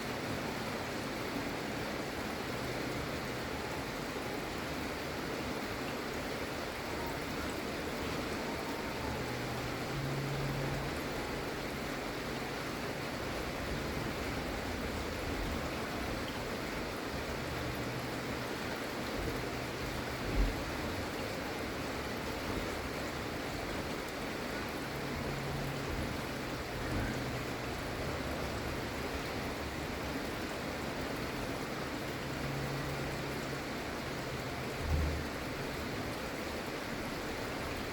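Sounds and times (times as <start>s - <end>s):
gentle rain falling: 0.0s - 37.9s.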